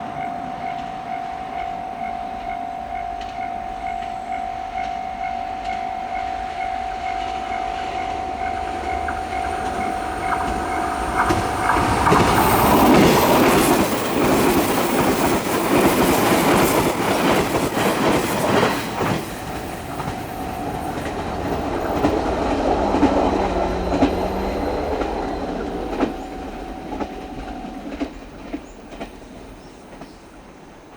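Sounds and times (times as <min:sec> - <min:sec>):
level crossing alarm ringing: 0:00.0 - 0:18.7
train wheels clattering on rails: 0:00.0 - 0:30.9.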